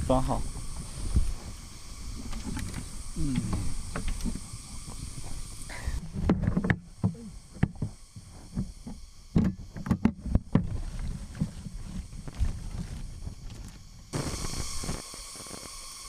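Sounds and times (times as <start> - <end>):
knocks and scraping on tree trunk: 6.0 - 14.1.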